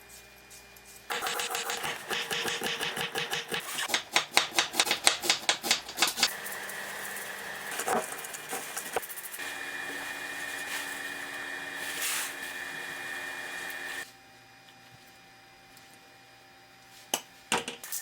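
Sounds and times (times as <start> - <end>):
knife cutting carrots: 1.1 - 14.0.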